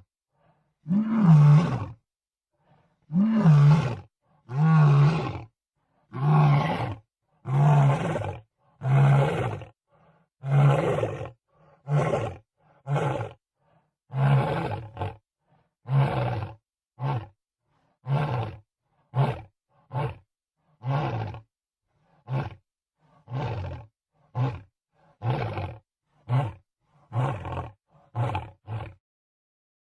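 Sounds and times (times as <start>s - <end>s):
lion roars and grunts: 0.8s - 2.0s, 3.0s - 9.7s, 10.4s - 13.4s, 14.1s - 15.2s, 15.8s - 17.4s, 18.0s - 21.5s, 22.1s - 29.0s.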